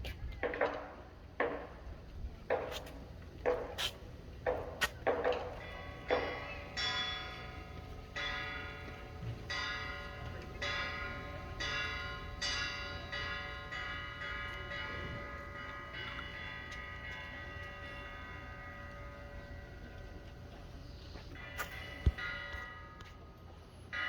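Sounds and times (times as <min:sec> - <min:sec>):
metal chimes ringing: 0:05.5 - 0:23.3.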